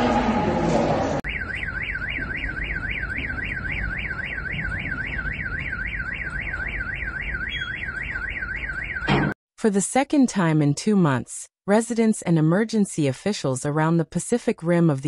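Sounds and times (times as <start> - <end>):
car alarm wailing: 1.2 - 9.4.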